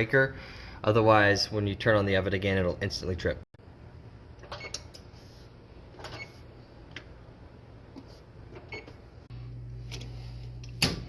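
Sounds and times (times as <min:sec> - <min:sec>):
low electrical hum: 0:00.0 - 0:11.0
oven touch-pad beeping: 0:04.5 - 0:04.9, 0:06.0 - 0:06.4, 0:08.6 - 0:09.0.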